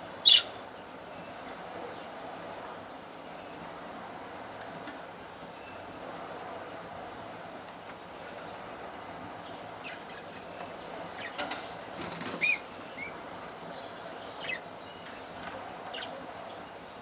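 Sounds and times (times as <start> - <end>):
budgerigars chirping: 0.2 - 0.5
wings fluttering: 12.0 - 13.1.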